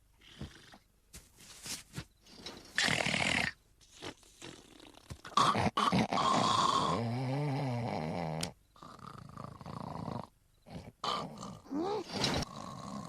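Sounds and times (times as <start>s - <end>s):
person snoring: 2.8s - 13.0s.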